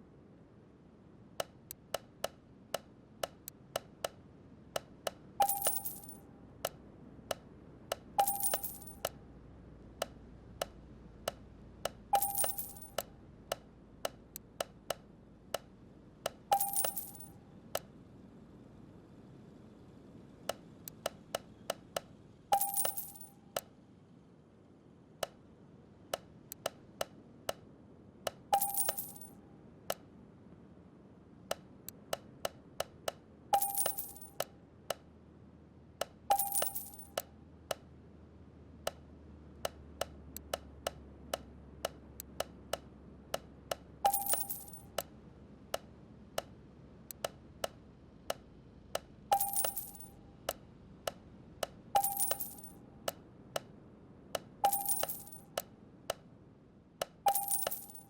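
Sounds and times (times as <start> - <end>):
ringing metal clink: 5.4 - 6.2, 8.2 - 9.1, 12.2 - 13.0, 16.5 - 17.4, 22.6 - 23.4, 28.6 - 29.4, 33.6 - 34.4, 36.3 - 37.2, 44.1 - 45.0, 49.3 - 50.2, 52.0 - 52.8, 54.6 - 55.6, 57.3 - 58.0.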